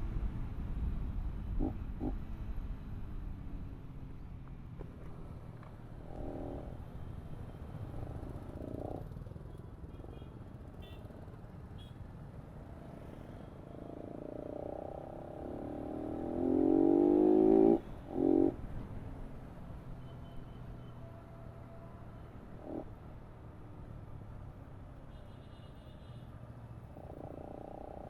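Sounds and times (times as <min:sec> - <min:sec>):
road traffic rumble: 0:00.0 - 0:28.0
vehicle engine revving: 0:14.3 - 0:18.6.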